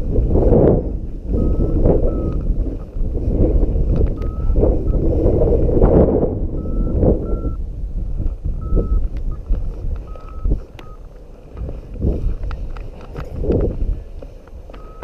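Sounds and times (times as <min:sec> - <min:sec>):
wind buffeting microphone: 0:00.0 - 0:15.0
electronic beep: 0:01.4 - 0:02.9, 0:04.1 - 0:05.0, 0:06.5 - 0:07.6, 0:08.6 - 0:11.1, 0:14.8 - 0:15.0.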